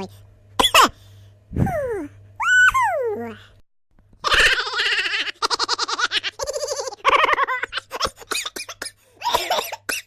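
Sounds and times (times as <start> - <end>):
cartoonish laughing effect: 4.2 - 9.6.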